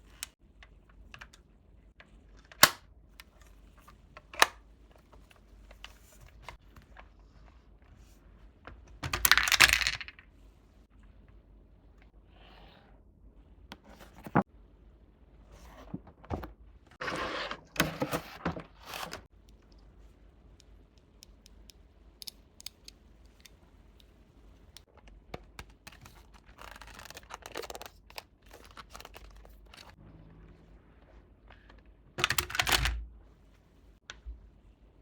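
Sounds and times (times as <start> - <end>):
small clicks and taps: 20.6 - 26.2
packaging rustling and tearing: 25.6 - 30.0.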